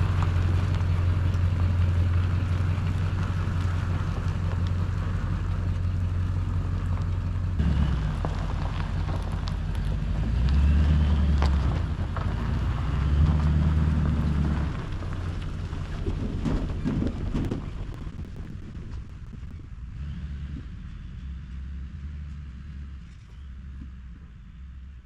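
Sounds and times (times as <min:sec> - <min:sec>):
heavy engine droning under load: 0:00.0 - 0:18.1, 0:19.7 - 0:25.0
wind noise on microphone: 0:13.3 - 0:21.5.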